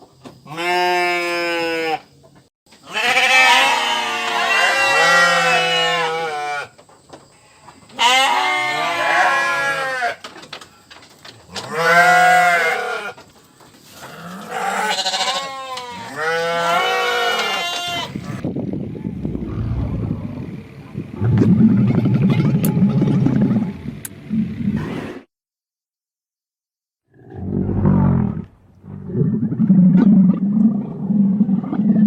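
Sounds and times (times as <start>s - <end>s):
livestock bleating: 0.5s - 2.0s, 2.9s - 6.7s, 8.0s - 10.2s, 11.7s - 13.1s, 14.1s - 18.1s.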